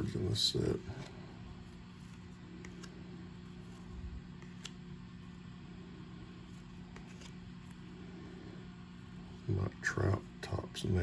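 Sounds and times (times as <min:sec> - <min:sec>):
steady low hum: 0:00.0 - 0:11.0
cards clicking: 0:01.9 - 0:03.0, 0:03.6 - 0:05.0, 0:06.6 - 0:07.8.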